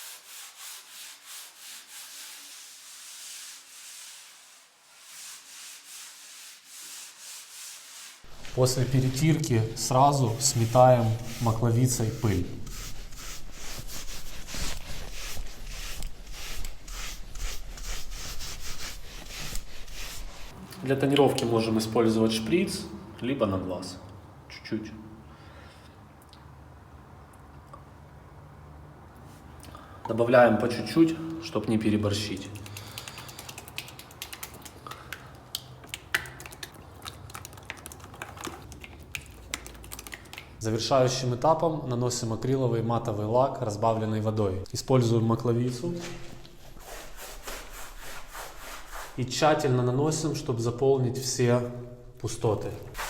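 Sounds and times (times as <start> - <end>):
rubbing strokes on plaster wall: 0.0 - 20.6, 30.5 - 36.8, 45.8 - 49.4.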